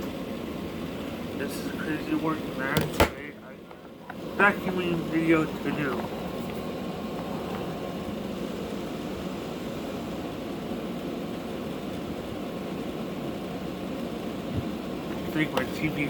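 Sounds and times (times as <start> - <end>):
vacuum cleaner running: 4.1 - 16.0.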